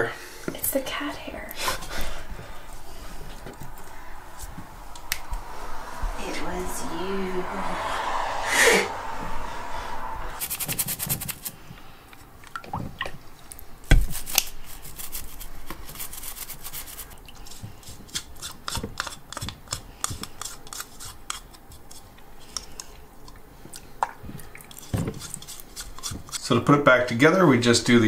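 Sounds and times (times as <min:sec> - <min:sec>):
toothbrush scrubbing drain stopper: 0:24.7 - 0:26.5.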